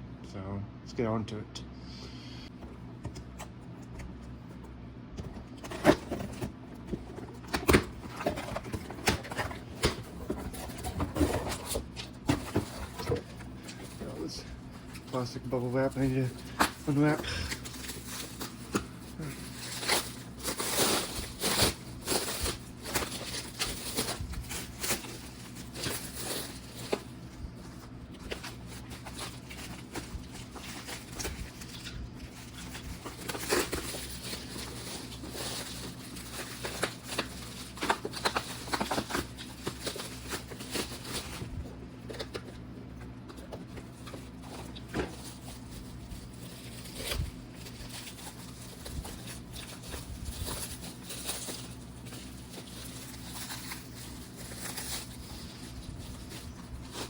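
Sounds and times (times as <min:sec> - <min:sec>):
bubble wrap rustling and crinkling: 0:05.6 - 0:57.0.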